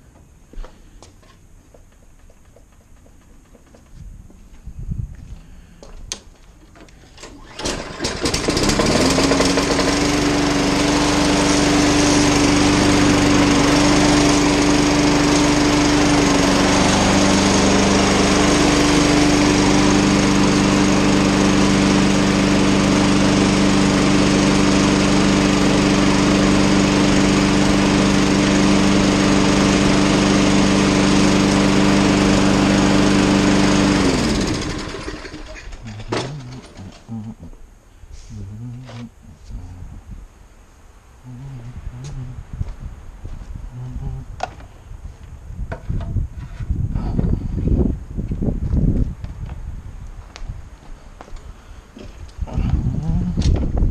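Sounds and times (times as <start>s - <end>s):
lawn mower engine running: 6.8s - 37.4s.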